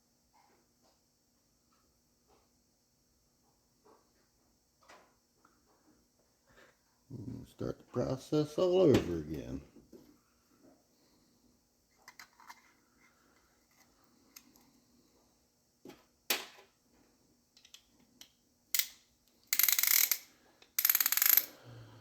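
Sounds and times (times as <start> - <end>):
rapid ratchet clicking: 18.8 - 21.6.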